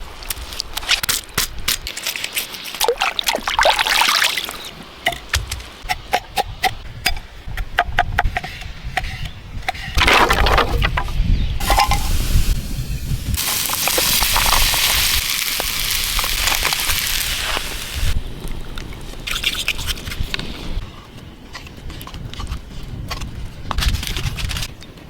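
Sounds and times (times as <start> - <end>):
water splashing and trickling: 2.2 - 5.2, 10.0 - 18.2.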